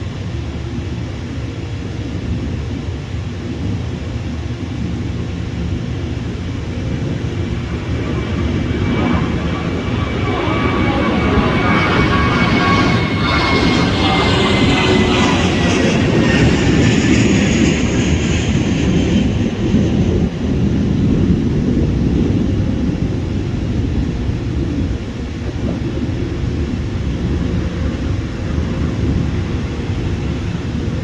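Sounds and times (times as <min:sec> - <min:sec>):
jet engines rumbling: 0:00.0 - 0:31.0.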